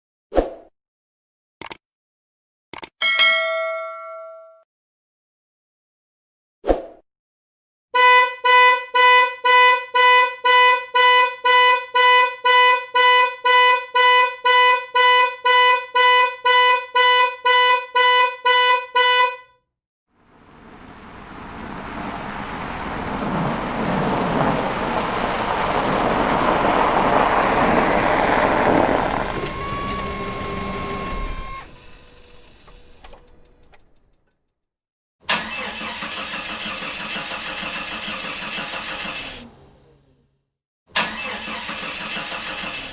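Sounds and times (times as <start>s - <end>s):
car horn honking: 8.0s - 19.5s
car passing: 20.2s - 31.5s.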